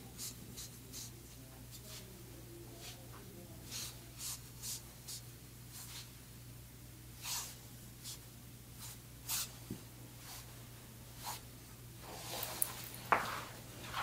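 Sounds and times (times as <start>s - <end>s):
low steady hum: 0.0s - 14.0s
hands rubbing over clothing: 12.0s - 14.0s.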